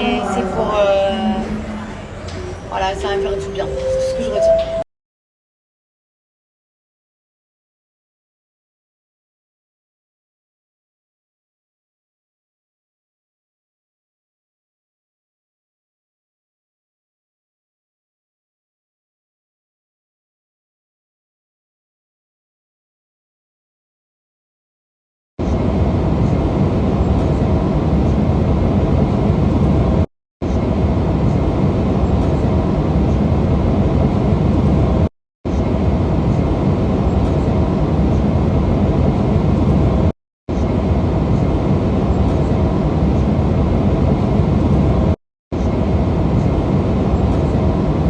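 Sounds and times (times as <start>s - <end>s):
airliner engine rumble: 25.4s - 48.0s.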